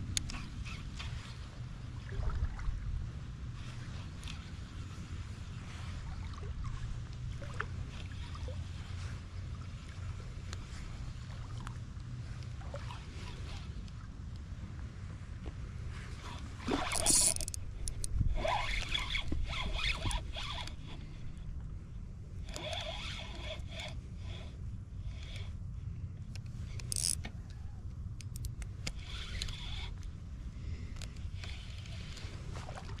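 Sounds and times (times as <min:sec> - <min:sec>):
low wind rumble on microphone: 0:00.0 - 0:33.0
gear handling scraping and rattling: 0:15.9 - 0:21.3, 0:22.4 - 0:24.5, 0:26.3 - 0:27.4.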